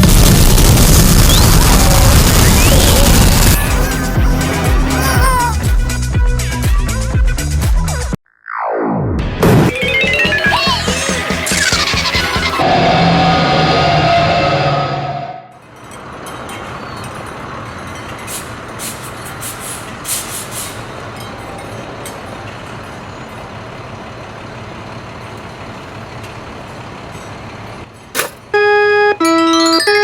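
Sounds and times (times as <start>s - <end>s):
truck engine running: 0.0s - 7.6s, 15.7s - 30.0s
piano notes: 28.6s - 30.0s.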